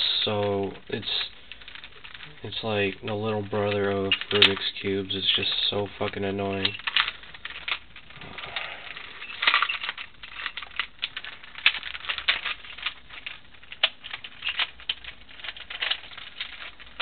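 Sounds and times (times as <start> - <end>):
puzzle layers clicking: 0.1 - 17.0.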